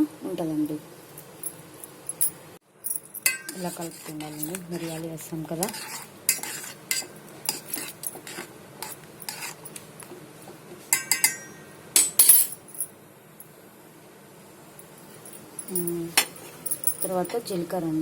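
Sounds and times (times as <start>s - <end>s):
metal spoon scraping a metal pot: 3.3s - 9.6s.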